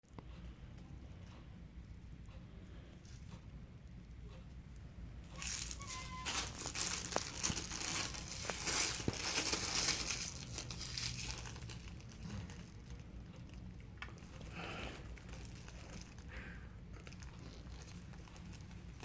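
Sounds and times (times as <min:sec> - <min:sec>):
wrapping crinkling and tearing: 0:05.3 - 0:19.0.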